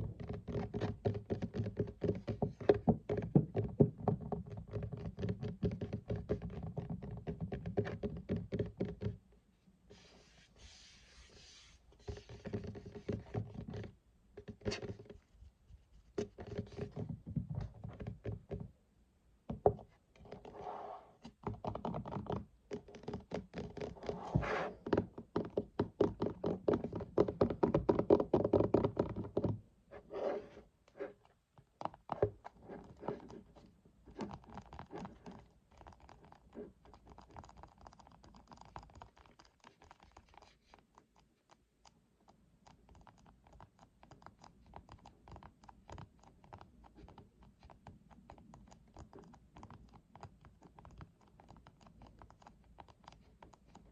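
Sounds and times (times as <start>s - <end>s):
fingers tapping on a desk: 0.0s - 9.2s, 21.2s - 24.2s, 24.8s - 29.6s.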